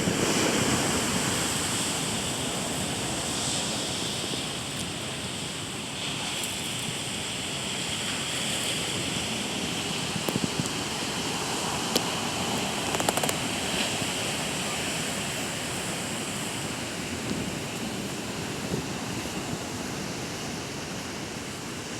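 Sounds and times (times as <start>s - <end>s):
ocean waves breaking on shore: 0.0s - 21.9s
sharp clicks: 12.9s - 13.4s.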